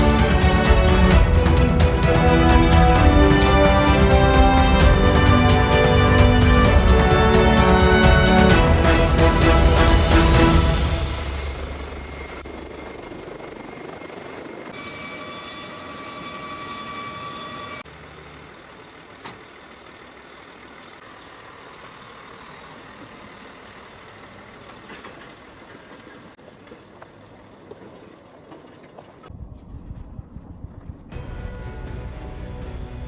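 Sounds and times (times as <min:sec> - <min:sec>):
high even whine: 0:00.0 - 0:20.1, 0:31.1 - 0:33.0
engine noise: 0:00.0 - 0:29.3, 0:31.1 - 0:33.0.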